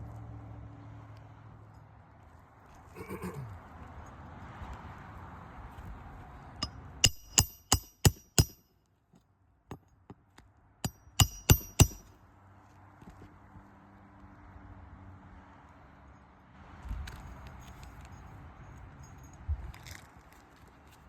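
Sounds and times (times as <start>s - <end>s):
hammer blows with metallic ring: 6.6s - 8.7s, 10.8s - 12.1s.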